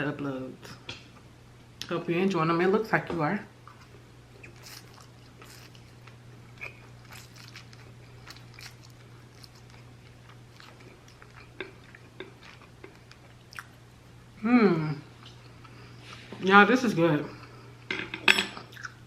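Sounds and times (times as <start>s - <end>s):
faint steady hum: 0.0s - 19.0s
person chewing noodles: 3.7s - 13.9s, 18.6s - 19.0s.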